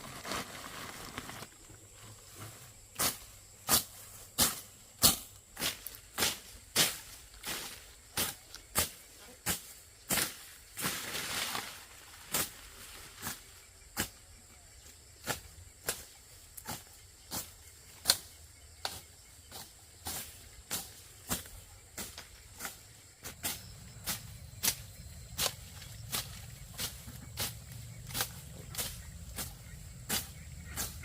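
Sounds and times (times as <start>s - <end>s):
short rustling: 0.0s - 1.5s.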